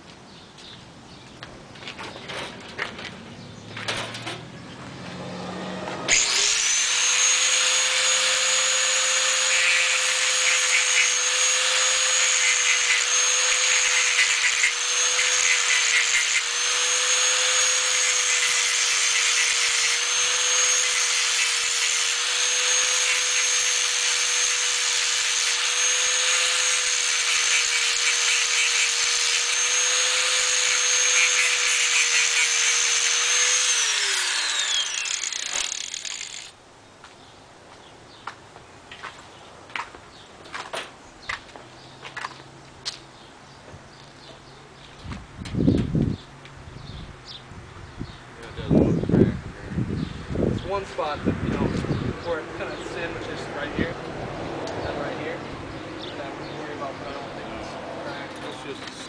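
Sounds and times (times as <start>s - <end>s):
electric power tool running: 4.9s - 36.6s.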